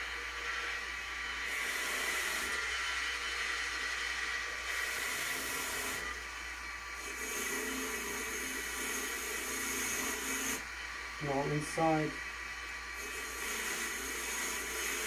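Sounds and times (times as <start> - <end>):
small power tool whirring: 0.0 - 15.0
high whine: 11.2 - 12.7.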